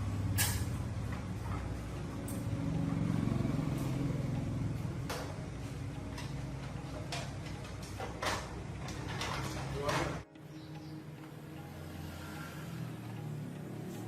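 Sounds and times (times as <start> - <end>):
engine running steadily: 0.0 - 8.4.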